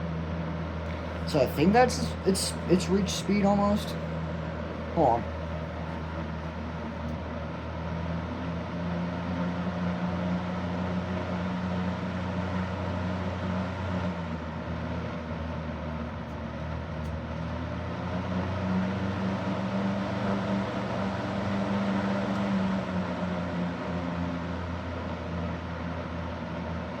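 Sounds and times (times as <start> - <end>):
box fan running: 0.0 - 27.0.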